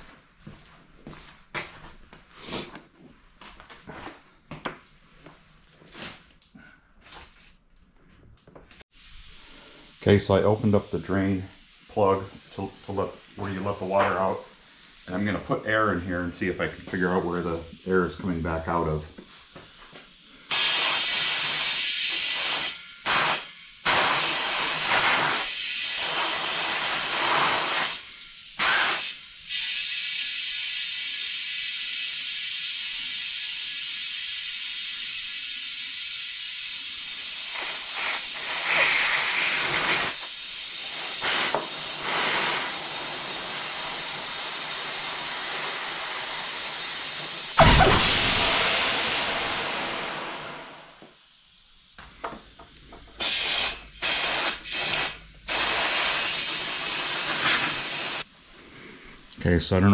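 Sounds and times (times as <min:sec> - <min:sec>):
compressed air hissing: 0:02.4 - 0:02.8, 0:08.9 - 0:51.2, 0:52.0 - 0:59.3
sharp knock: 0:47.6 - 0:49.7.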